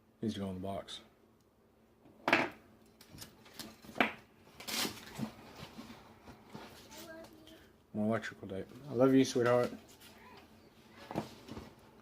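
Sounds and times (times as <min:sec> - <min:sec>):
tools clunking on a table: 0:02.2 - 0:04.2.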